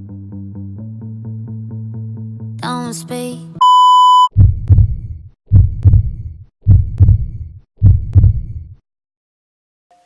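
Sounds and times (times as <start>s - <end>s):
heartbeat double thumps: 4.2s - 8.6s.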